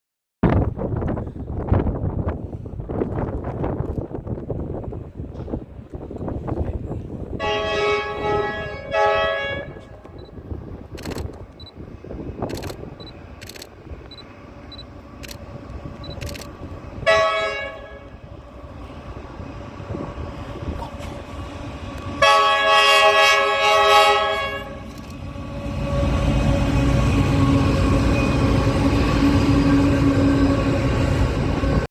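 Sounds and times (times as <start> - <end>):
train rumble: 0.5 - 31.9
train horn blasts: 7.4 - 10.0, 17.0 - 18.3, 22.2 - 31.8.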